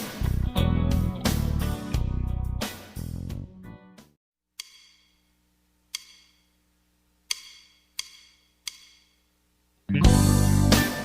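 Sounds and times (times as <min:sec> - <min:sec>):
guitar music: 0:00.0 - 0:02.7, 0:09.9 - 0:11.0.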